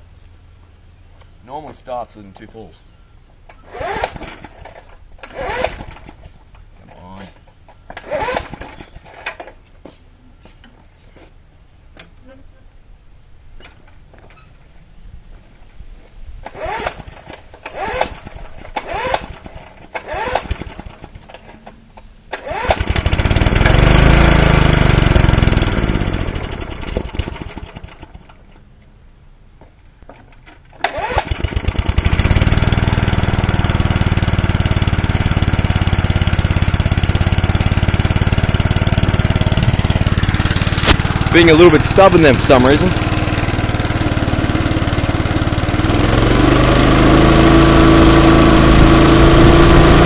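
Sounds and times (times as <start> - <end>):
lawnmower engine running: 0.0 - 9.9, 15.4 - 29.0, 29.6 - 50.0
recoil starter pulls: 3.4 - 9.8, 16.4 - 28.7, 29.6 - 50.0.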